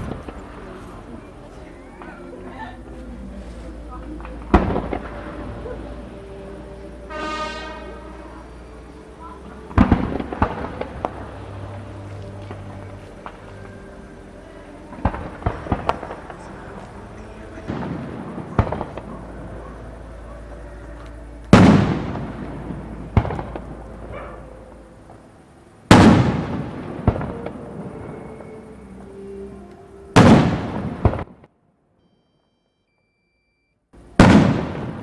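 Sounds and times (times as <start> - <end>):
sharp crack: 14.9 - 24.4, 25.9 - 27.7, 30.2 - 31.4, 34.2 - 35.0
light firework pops and cracks: 21.0 - 22.5, 34.2 - 35.0.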